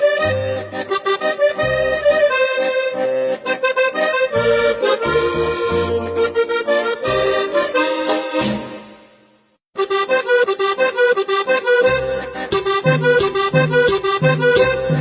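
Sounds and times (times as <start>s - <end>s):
accordion dance music: 0.0s - 15.0s.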